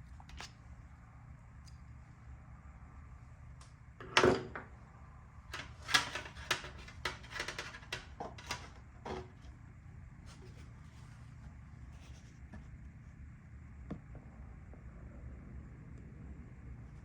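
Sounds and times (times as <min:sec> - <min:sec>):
tools clicking and knocking: 0:05.5 - 0:09.3.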